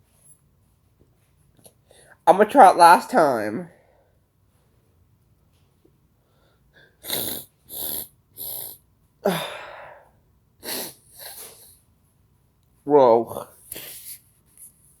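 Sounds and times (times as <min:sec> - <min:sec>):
man sniffing: 0:06.8 - 0:10.0, 0:10.6 - 0:11.8, 0:13.6 - 0:14.3.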